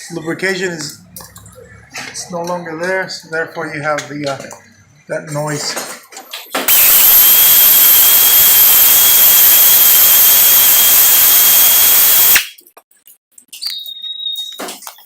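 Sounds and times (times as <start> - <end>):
air tool hissing with whine: 6.7 - 12.4.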